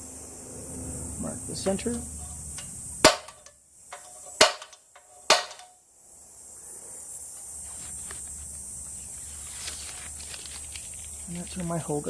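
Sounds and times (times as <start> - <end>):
center punch striking steel: 1.7 - 5.8.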